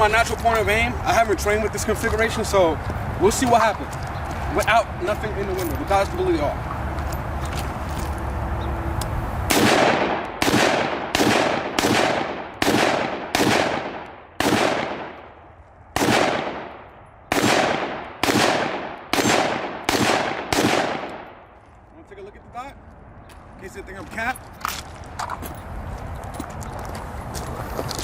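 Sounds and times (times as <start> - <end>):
pistol gunshots echoing: 9.5 - 21.4.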